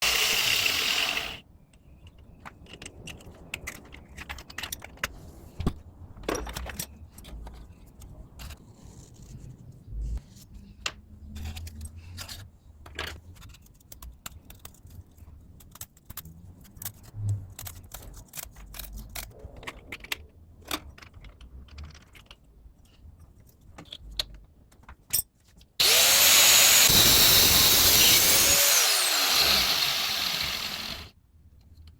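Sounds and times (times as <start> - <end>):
angle grinder running: 0.0 - 1.4, 25.8 - 31.1
clicks and taps of small parts: 1.7 - 8.6, 10.8 - 25.8.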